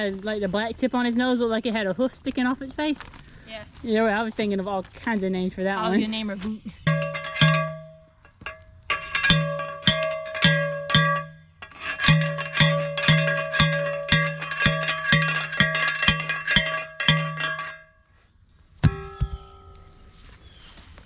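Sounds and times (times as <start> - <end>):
post driver clanging on metal: 6.9 - 17.9.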